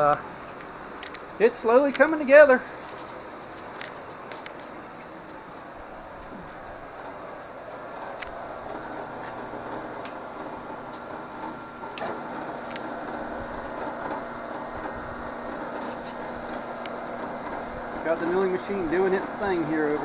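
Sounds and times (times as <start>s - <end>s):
milling machine whirring cut: 0.0s - 20.0s
steady hum: 0.0s - 20.0s.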